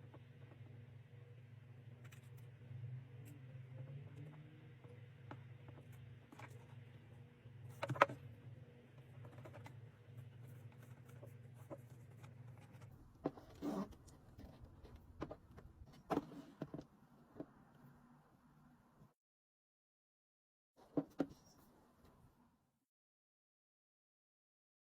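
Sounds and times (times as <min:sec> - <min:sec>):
low steady hum: 0:00.0 - 0:19.2.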